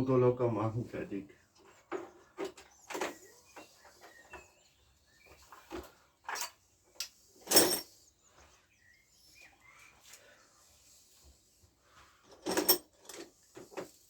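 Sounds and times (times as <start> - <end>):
tools clanking on metal parts: 7.4 - 7.9, 12.3 - 13.3.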